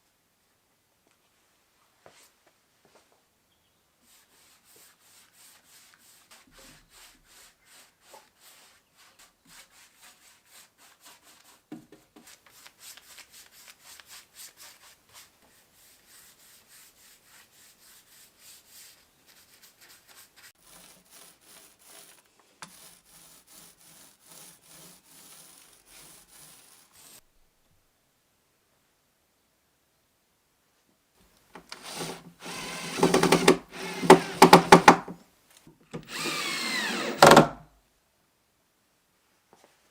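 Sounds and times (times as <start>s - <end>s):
sandpaper rubbing wood: 4.1s - 27.2s, 31.8s - 34.8s, 36.1s - 37.3s.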